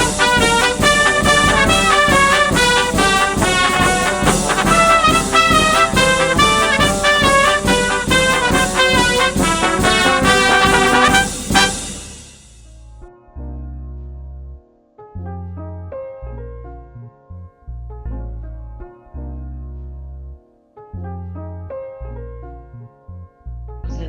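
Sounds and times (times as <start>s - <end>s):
instrumental music beat: 0.0s - 12.8s.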